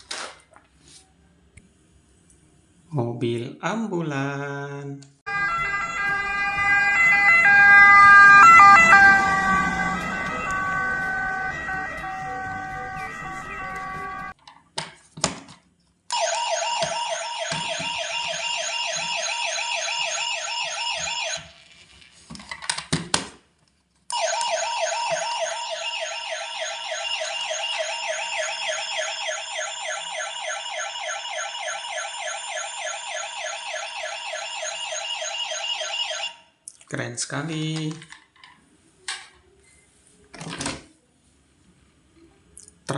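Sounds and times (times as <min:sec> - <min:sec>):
toy electronic siren warbling: 0:05.3 - 0:14.4, 0:16.1 - 0:21.5, 0:24.1 - 0:36.4.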